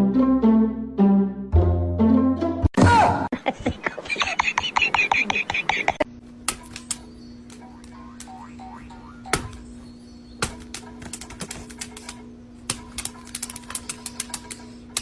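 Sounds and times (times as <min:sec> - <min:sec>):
steady low hum: 0:03.3 - 0:15.0.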